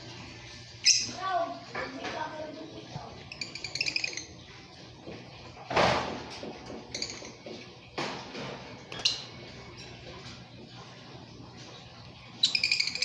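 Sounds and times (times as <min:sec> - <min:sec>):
lovebirds chirping: 0:00.8 - 0:01.2, 0:03.1 - 0:04.7, 0:12.3 - 0:13.0.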